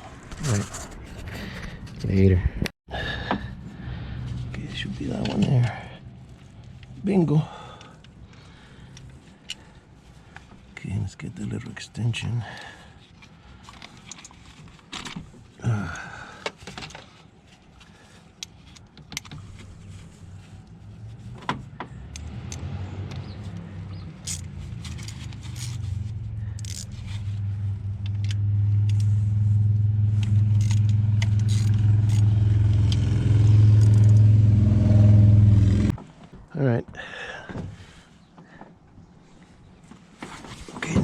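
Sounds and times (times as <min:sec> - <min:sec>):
low motor drone: 0:22.0 - 0:36.0.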